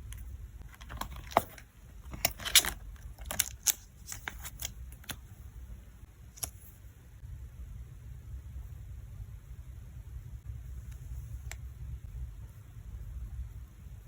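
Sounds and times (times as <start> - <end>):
low steady hum: 0.0 - 14.0
plastic crinkling: 0.8 - 5.2.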